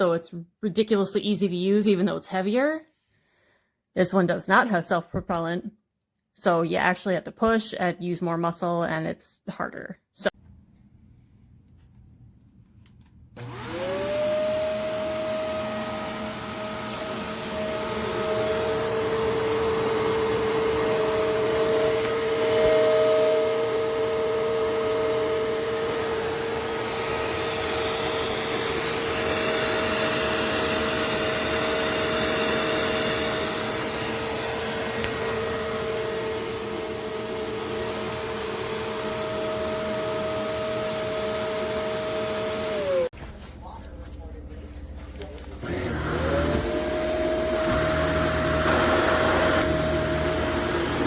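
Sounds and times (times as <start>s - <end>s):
vacuum cleaner running: 13.4s - 43.2s, 44.9s - 51.0s.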